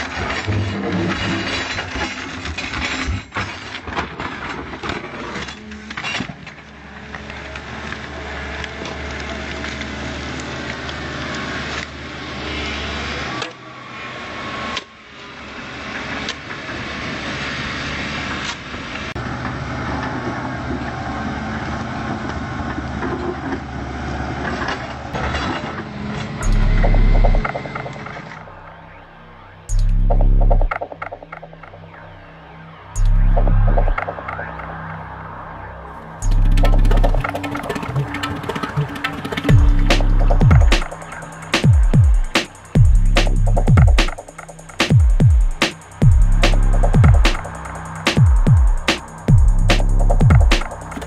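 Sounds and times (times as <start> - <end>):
excavator diesel engine: 25.2 - 34.6, 35.4 - 44.9.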